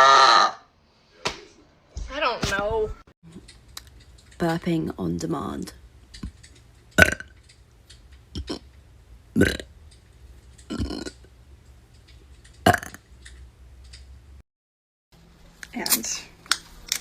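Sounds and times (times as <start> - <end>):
person burping: 7.0 - 7.3, 8.4 - 8.7, 9.4 - 9.7, 10.7 - 11.3, 12.6 - 13.0.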